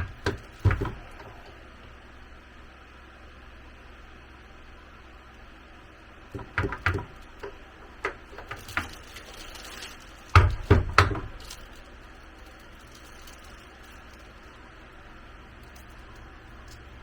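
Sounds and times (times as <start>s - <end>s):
building work knocks and thumps: 0.0s - 1.5s, 6.3s - 11.9s.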